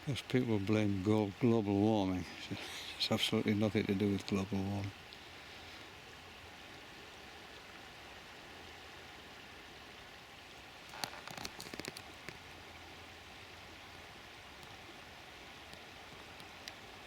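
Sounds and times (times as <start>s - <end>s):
river rushing in flood: 0.0s - 17.0s
clicks and rustles: 10.8s - 12.4s.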